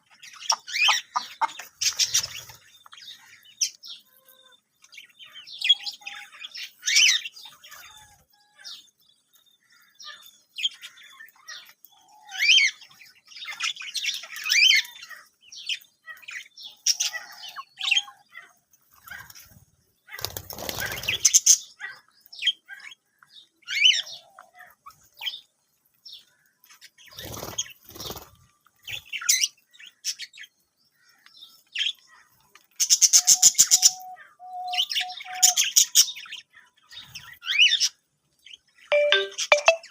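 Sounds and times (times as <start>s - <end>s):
budgerigars chirping and warbling: 0.0s - 25.5s, 26.1s - 39.9s
wings flapping: 20.1s - 21.4s, 27.2s - 28.4s.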